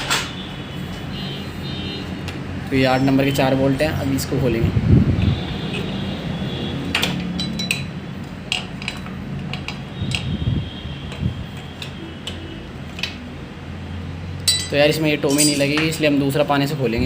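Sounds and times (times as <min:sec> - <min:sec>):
hand tools clinking on metal bolts: 0:06.9 - 0:10.2, 0:14.4 - 0:16.1.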